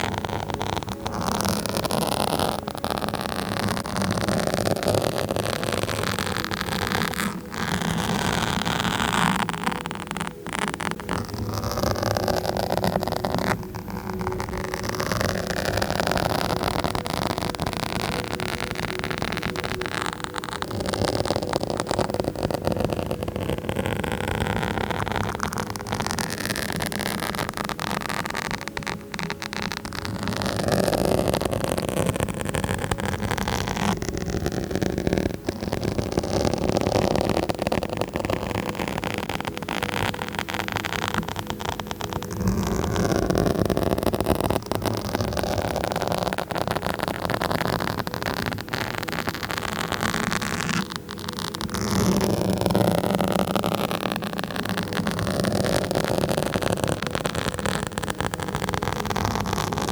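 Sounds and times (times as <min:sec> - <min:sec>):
scratching on a microphone: 0:00.0 - 0:59.9.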